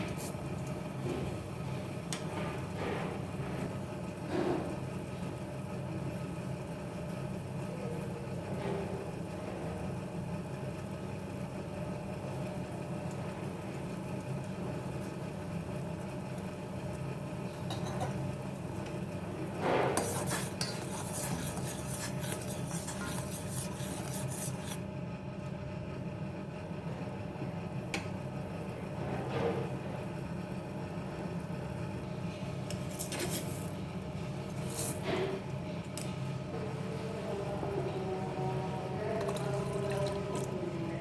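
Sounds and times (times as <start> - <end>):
steady low hum: 8.3 - 41.0
metal utensils scraping a pan: 20.0 - 24.8.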